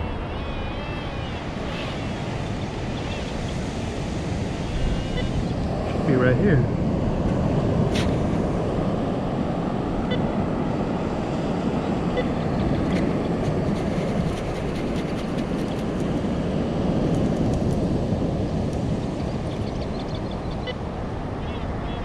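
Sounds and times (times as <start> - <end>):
surf washing: 0.0 - 22.0
wind buffeting microphone: 0.0 - 22.0
faint short beeps: 10.1 - 10.4, 12.1 - 12.4.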